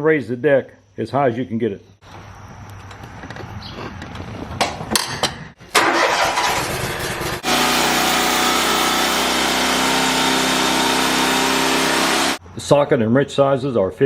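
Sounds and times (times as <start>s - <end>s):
mower engine starting and running: 5.6s - 12.4s.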